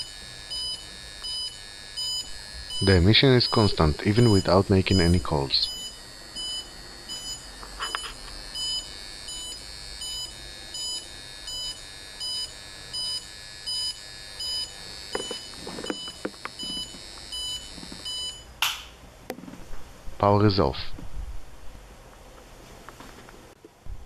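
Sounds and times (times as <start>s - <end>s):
meter alarm two-tone beeps: 0.0s - 18.5s.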